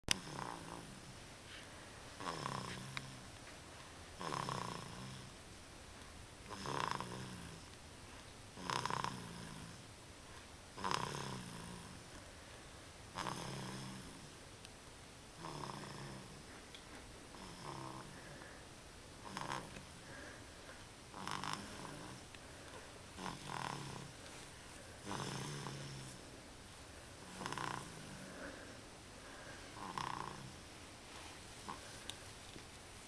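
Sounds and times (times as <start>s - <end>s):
baby snoring: 0.1s - 1.1s, 2.2s - 3.3s, 4.2s - 5.4s, 6.4s - 7.8s, 8.5s - 9.9s, 10.8s - 12.2s, 13.1s - 14.4s, 15.4s - 16.5s, 17.3s - 18.6s, 19.2s - 26.2s, 27.2s - 30.6s.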